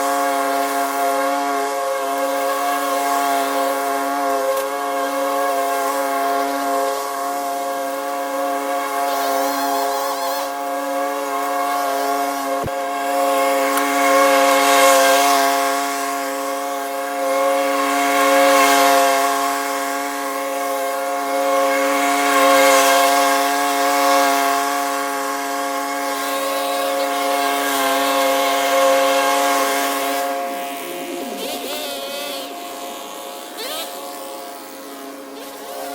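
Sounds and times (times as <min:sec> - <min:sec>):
small engine running at high speed: 0:00.0 - 0:35.9.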